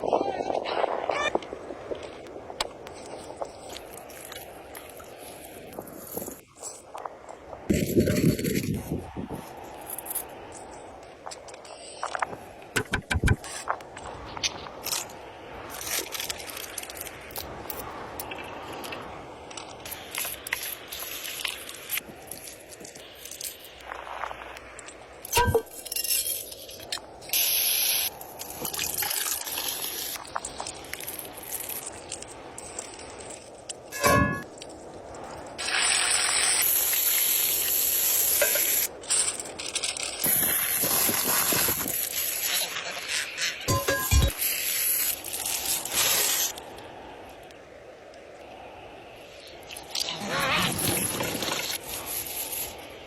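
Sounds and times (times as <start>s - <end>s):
cooking hiss: 2.9s - 53.0s
utensils knocking and clicking: 12.8s - 13.4s.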